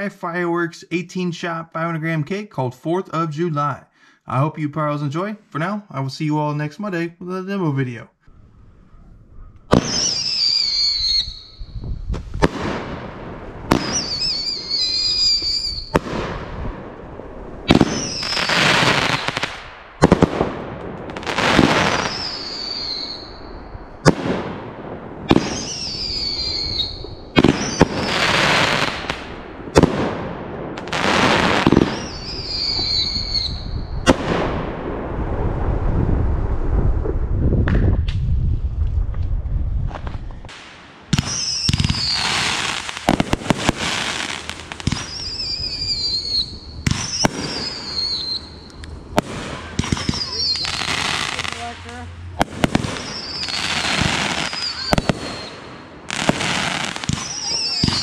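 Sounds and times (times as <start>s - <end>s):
falling whistle of fireworks: 9.7s - 13.0s, 13.6s - 16.7s, 17.6s - 20.4s, 21.1s - 24.4s, 25.2s - 29.9s, 30.8s - 34.4s, 40.5s - 51.4s, 52.6s - 58.0s
firework bangs: 9.7s - 38.3s, 39.9s - 58.0s.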